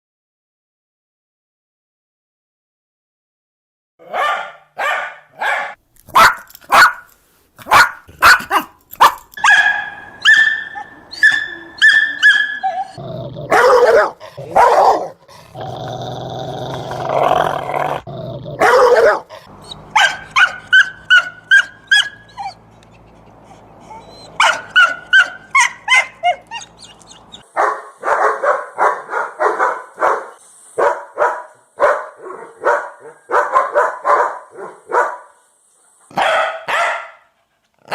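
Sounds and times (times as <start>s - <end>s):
dog barking: 4.0s - 15.2s, 18.6s - 22.6s, 24.0s - 35.4s, 36.1s - 37.9s
dog growling: 12.7s - 27.4s.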